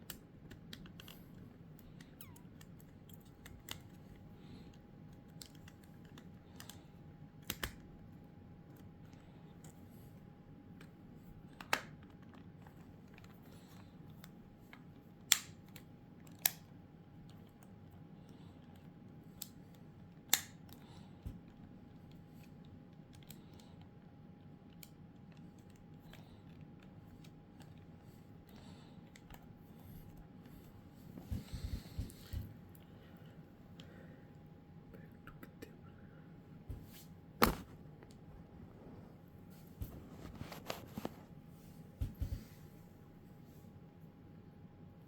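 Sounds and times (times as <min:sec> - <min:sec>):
faint steady hum: 0:00.0 - 0:45.0
plastic snaps: 0:37.4 - 0:38.2.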